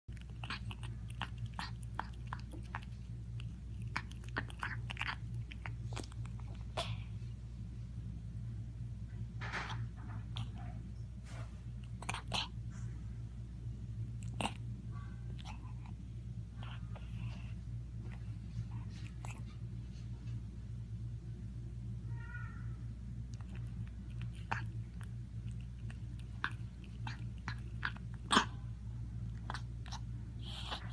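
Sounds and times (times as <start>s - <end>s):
cat crunching food: 0.1s - 7.4s, 9.4s - 10.9s, 11.7s - 12.6s, 14.0s - 19.7s, 23.1s - 30.9s
low hum: 0.1s - 30.9s
cat mewing: 22.0s - 28.6s.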